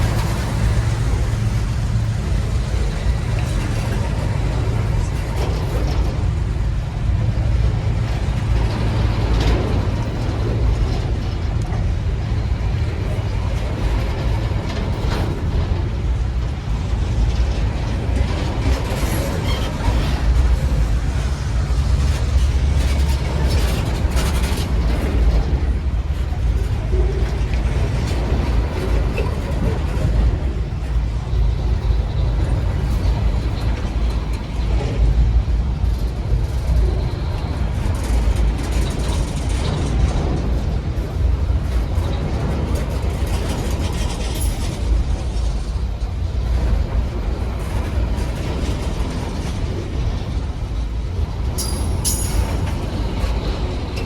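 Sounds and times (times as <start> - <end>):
locomotive engine deep rumbling: 0.0 - 54.0.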